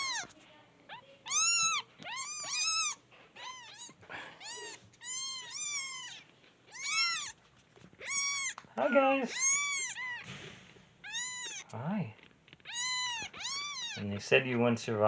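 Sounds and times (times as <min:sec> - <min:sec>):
kittens mewing: 0:00.0 - 0:11.8, 0:12.5 - 0:14.2.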